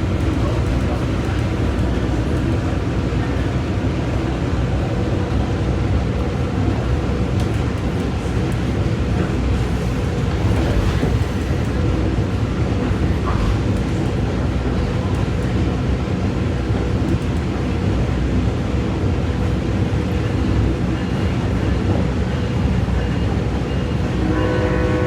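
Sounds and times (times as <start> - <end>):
train rumbling on rails: 0.0 - 25.0.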